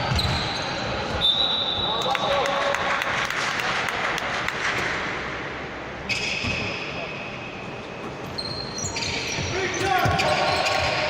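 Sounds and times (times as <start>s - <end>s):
echoing voices: 9.4s - 11.0s.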